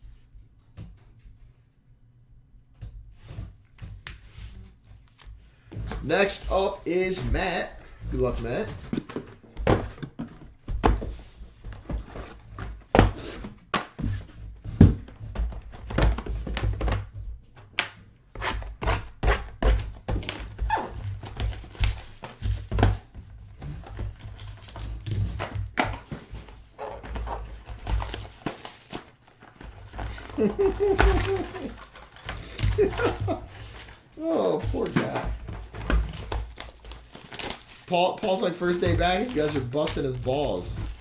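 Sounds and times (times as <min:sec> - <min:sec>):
card packs crinkling: 0:20.2 - 0:23.0, 0:23.7 - 0:41.0.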